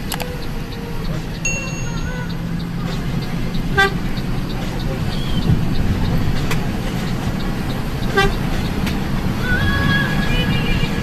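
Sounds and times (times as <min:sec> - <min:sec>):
bus engine running: 0:00.0 - 0:11.0
short horn beep: 0:01.5 - 0:02.4.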